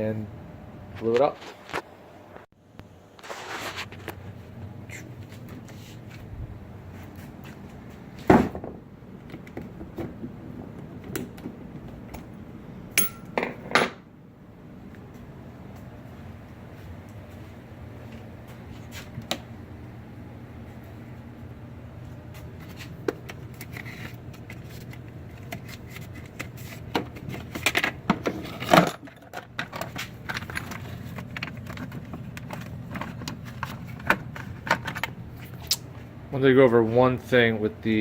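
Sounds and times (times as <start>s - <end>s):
low background hum: 0.0s - 38.0s
clattering scrape: 3.2s - 4.1s.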